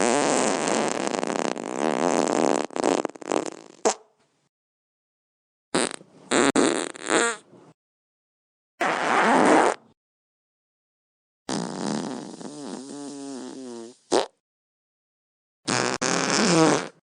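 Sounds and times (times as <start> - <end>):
long wavering fart: 0.0 - 4.0, 5.8 - 7.4, 8.8 - 9.9, 11.5 - 14.4, 15.7 - 17.0
quick short farts: 0.0 - 4.0, 5.8 - 7.5, 8.8 - 10.0, 11.5 - 14.4, 15.7 - 17.0.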